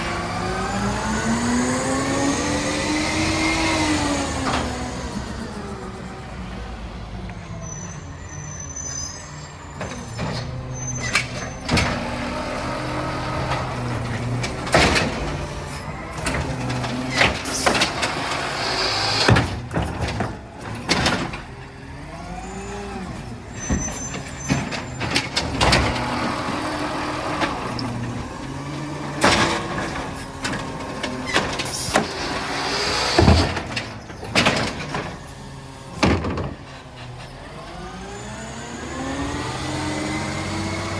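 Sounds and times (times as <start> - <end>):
diesel engine revving: 0.0 - 40.9
metal clanks and bangs: 9.8 - 22.1, 23.0 - 37.8.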